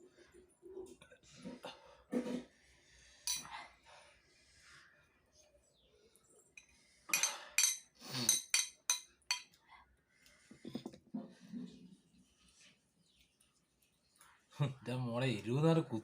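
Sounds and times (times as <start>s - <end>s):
cutlery clinking against dish: 3.3s - 3.5s, 6.6s - 9.6s.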